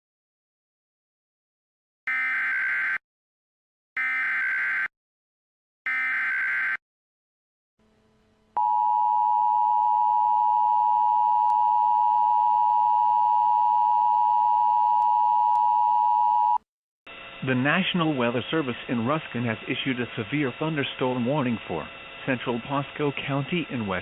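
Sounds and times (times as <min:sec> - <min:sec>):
steady attention signal tone: 0:08.6 - 0:16.6.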